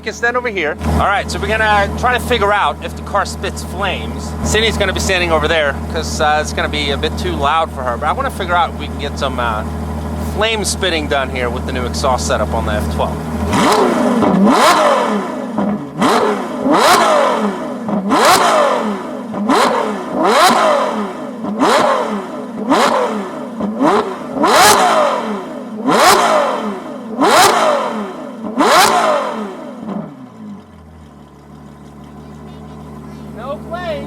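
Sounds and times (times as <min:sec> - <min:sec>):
exhaust cracking: 0:00.0 - 0:34.0
engine revving: 0:00.3 - 0:34.0.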